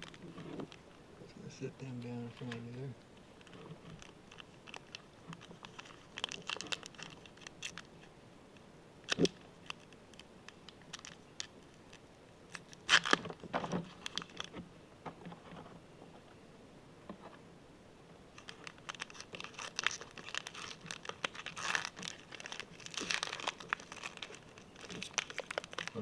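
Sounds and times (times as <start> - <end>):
plastic wrappers crinkling and tearing: 0.0 - 0.8, 2.1 - 8.1, 9.1 - 14.6, 18.4 - 26.0.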